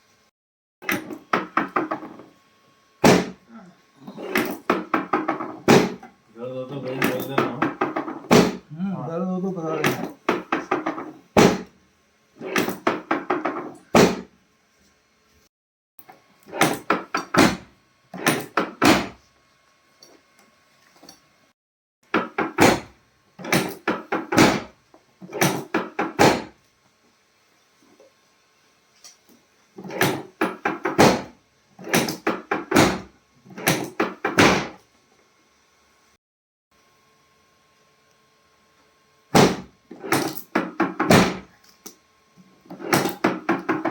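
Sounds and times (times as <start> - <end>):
sharp knocks and thuds: 3.0 - 3.4, 4.7 - 6.0, 7.0 - 8.7, 9.9 - 11.7, 12.6 - 14.3, 22.2 - 24.7, 30.0 - 31.3, 31.9 - 34.8, 39.4 - 41.5
thumps and knocks: 4.3 - 6.1, 7.0 - 8.7, 9.8 - 11.7, 42.7 - 43.9.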